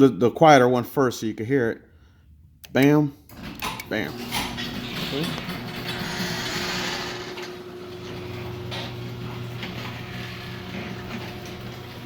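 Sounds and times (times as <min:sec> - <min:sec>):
garage door motors humming: 0:03.3 - 0:12.0.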